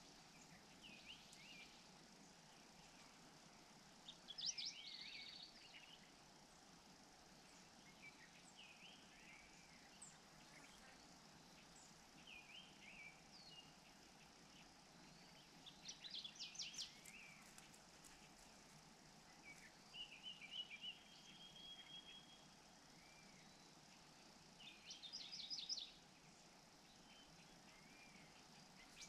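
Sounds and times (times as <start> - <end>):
steady background hiss: 0.0 - 29.0
bird trill: 19.4 - 23.7.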